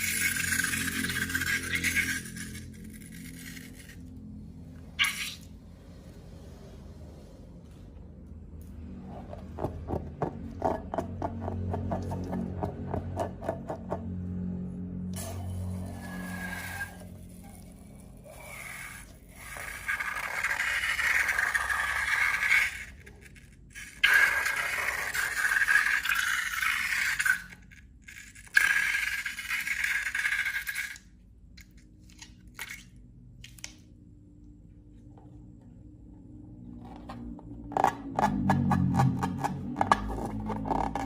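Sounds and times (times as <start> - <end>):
slime scraping with balloons: 4.8 - 7.3.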